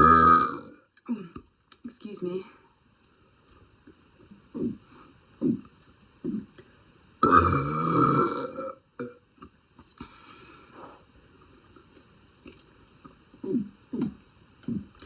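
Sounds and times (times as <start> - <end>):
girl burping: 0.0 - 1.3, 7.2 - 9.2.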